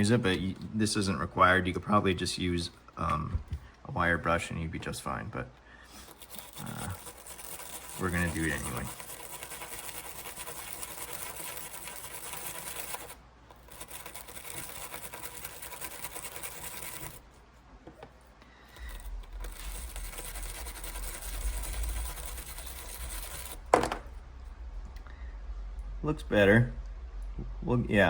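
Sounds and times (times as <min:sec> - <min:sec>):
wire brush scrubbing metal: 0:05.9 - 0:17.4, 0:18.8 - 0:23.8.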